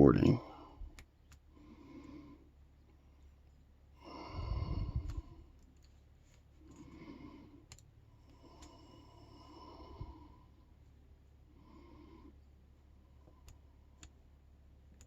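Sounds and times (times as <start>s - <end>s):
heavy sigh: 4.0s - 5.4s
breathing on microphone: 4.1s - 5.5s.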